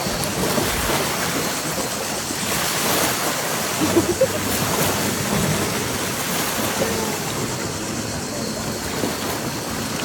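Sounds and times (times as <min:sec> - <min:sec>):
sea surf at shoreline: 0:00.0 - 0:10.0.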